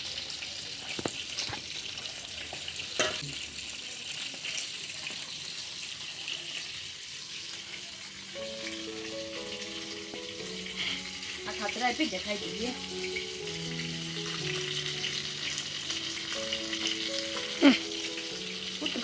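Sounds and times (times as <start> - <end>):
food sizzling in a pan: 0.0 - 19.0
background music with held notes: 8.2 - 19.0.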